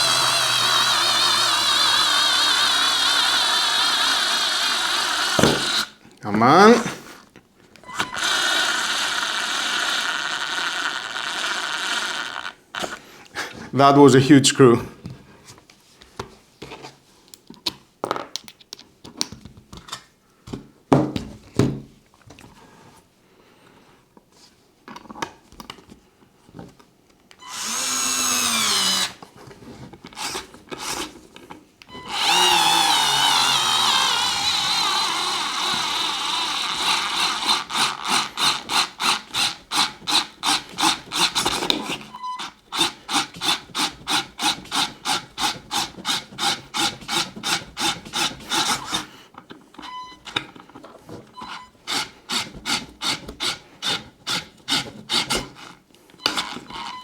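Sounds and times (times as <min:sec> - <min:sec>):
cordless screwdriver motor whine: 0:00.0 - 0:05.9, 0:07.9 - 0:13.0, 0:27.4 - 0:29.2, 0:31.9 - 0:41.7, 0:56.2 - 0:57.0
screwdriver clutch clicking: 0:55.3 - 0:57.0.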